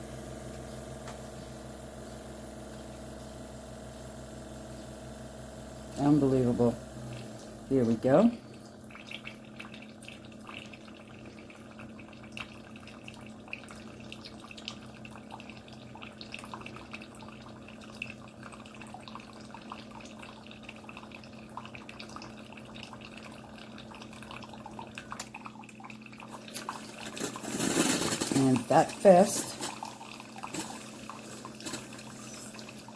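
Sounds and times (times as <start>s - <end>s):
coffee dripping into cup: 6.0s - 27.3s, 28.4s - 32.9s.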